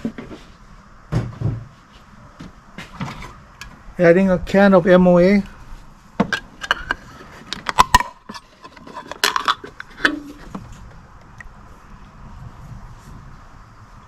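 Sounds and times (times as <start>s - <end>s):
metal can clinking: 6.2s - 10.6s.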